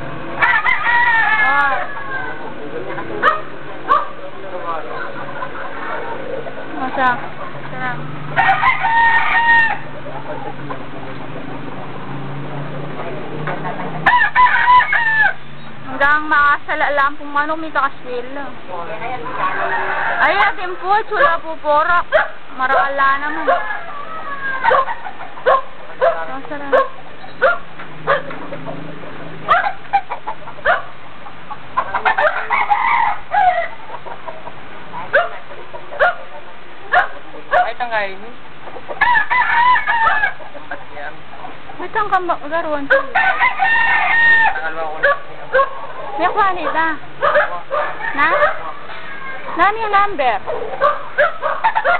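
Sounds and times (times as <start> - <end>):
chickens clucking: 0.0 - 51.9
rooster crowing: 0.4 - 2.5, 8.3 - 10.0, 14.0 - 15.5, 19.2 - 20.8, 23.2 - 26.2, 32.0 - 33.9, 39.0 - 40.4, 42.9 - 49.6.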